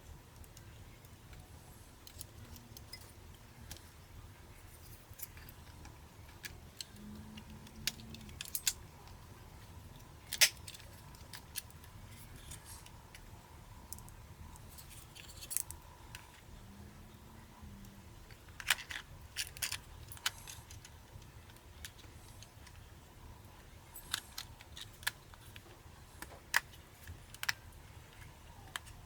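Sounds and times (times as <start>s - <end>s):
low steady hum: 0.0s - 29.0s
tools and parts clicking: 4.8s - 9.2s, 13.9s - 16.3s, 18.3s - 22.8s, 24.0s - 29.0s.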